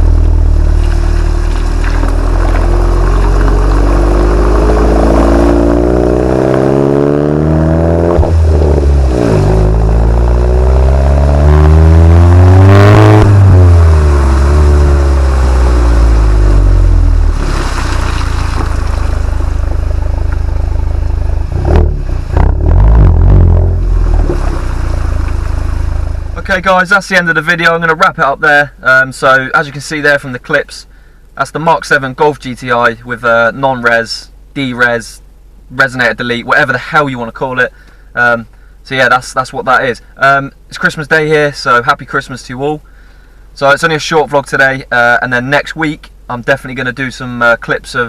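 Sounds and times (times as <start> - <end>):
car engine revving: 0.0 - 26.7.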